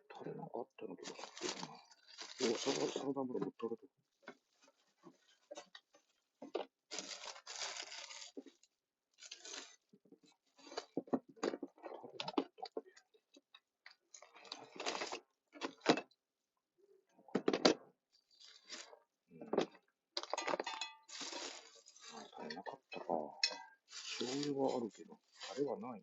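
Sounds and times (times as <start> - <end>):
plastic bags rustling: 1.0 - 3.1, 6.9 - 8.4, 9.2 - 9.8, 20.4 - 22.6, 23.9 - 25.7
bottles and containers knocking: 19.5 - 21.6.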